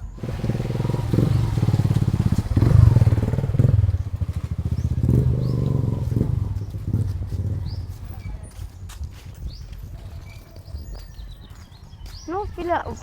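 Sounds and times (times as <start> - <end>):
motorcycle engine at low revs: 0.0 - 11.6.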